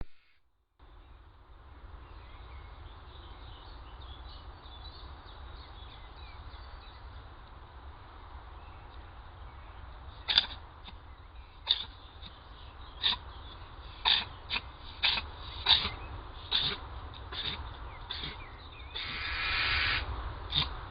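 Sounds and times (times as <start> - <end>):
low background noise: 0.0 - 20.9
fox snorting: 10.2 - 11.0, 11.6 - 12.4, 13.0 - 13.3, 13.9 - 20.9
fox sneezing: 10.3 - 11.0, 13.9 - 18.4, 19.0 - 20.8.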